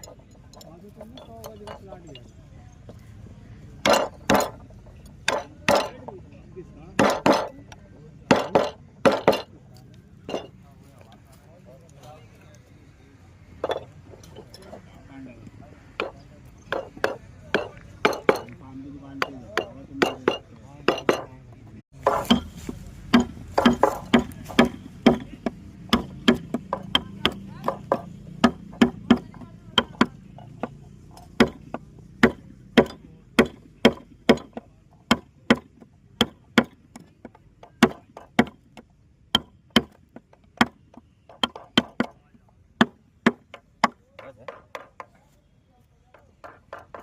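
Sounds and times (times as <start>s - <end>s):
mallet tapping chisel into wood: 23.1s - 38.6s, 39.3s - 42.2s, 42.8s - 45.1s.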